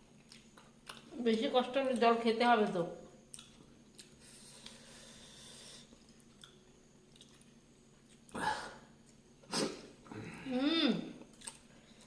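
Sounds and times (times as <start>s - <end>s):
soft chewing clicks: 0.1s - 1.1s, 1.8s - 4.8s, 5.9s - 8.3s, 11.3s - 12.0s
hissing breath: 4.2s - 5.9s.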